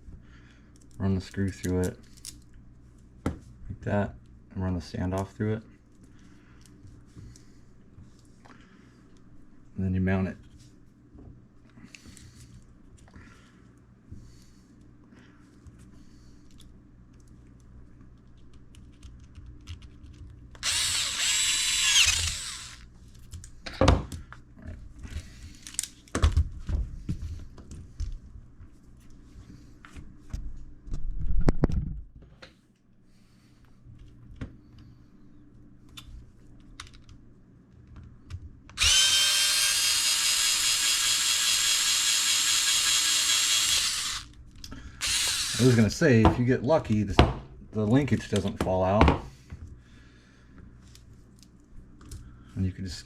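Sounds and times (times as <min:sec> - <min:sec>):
electric drill driving a screw: 0:20.6 - 0:22.8, 0:38.8 - 0:44.3, 0:45.0 - 0:45.9.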